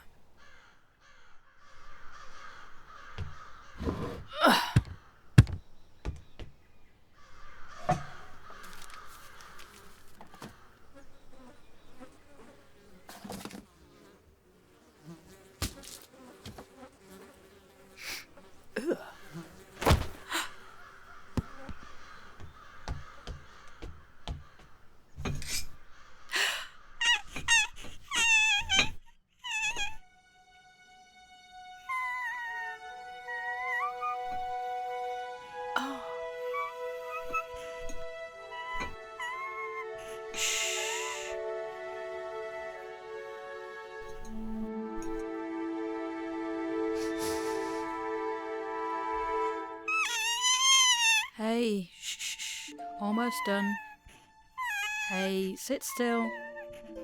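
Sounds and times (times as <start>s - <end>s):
crow-like caws: 0.3s - 3.8s, 7.2s - 10.9s, 20.2s - 24.8s, 39.3s - 41.4s
sharp thuds: 3.0s - 7.0s, 15.6s - 16.7s, 19.5s - 25.9s
creature chirping squeaks: 27.0s - 30.0s, 49.9s - 54.0s, 54.6s - 55.3s.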